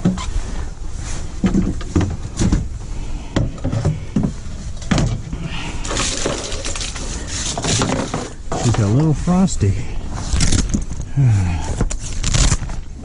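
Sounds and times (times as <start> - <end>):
steady low rumble: 0.0 - 13.0
knocks and clatter of frame: 3.4 - 5.3, 5.9 - 8.9.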